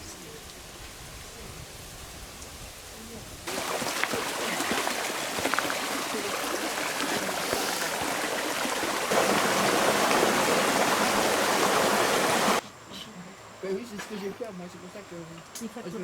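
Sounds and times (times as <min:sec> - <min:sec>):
stream water rushing: 0:03.5 - 0:12.6.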